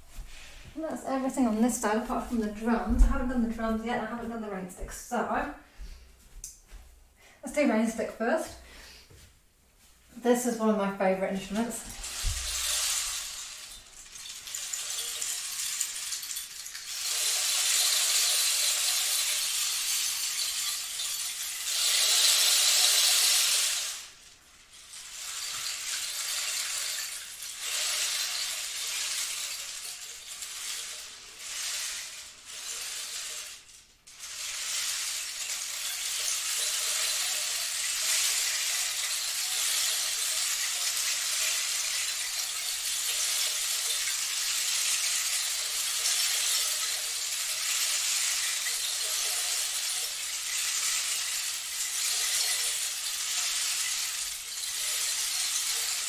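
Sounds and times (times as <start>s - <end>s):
rain stick pellets trickling: 11.4s - 56.0s.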